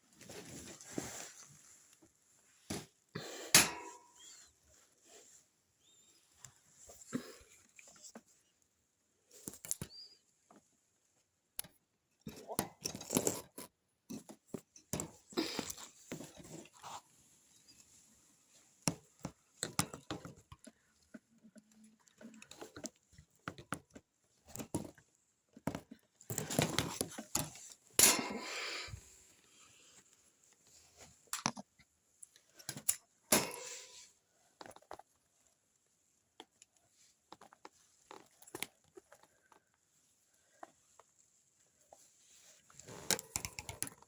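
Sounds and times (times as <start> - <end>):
pets rustling and scratching in cages: 0.0 - 8.4, 12.4 - 31.3, 32.2 - 35.6.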